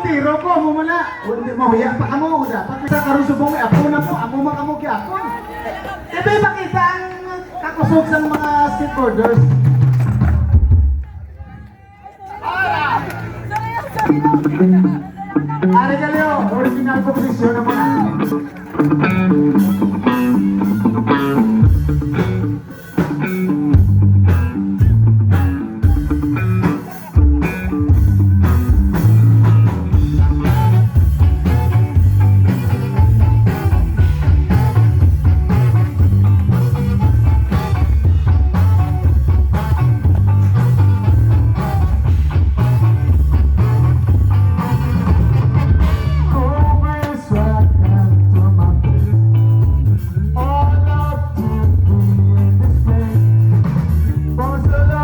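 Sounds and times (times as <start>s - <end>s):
bass guitar: 0.0s - 11.4s, 12.4s - 55.0s
drums: 1.7s - 5.2s, 7.7s - 11.6s, 13.2s - 55.0s
electric guitar: 12.9s - 55.0s.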